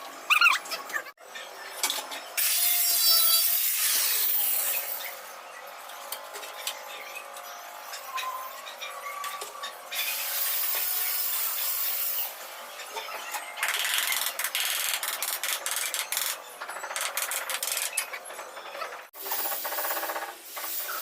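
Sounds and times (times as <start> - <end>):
tools grinding and scraping stone: 1.6 - 21.0.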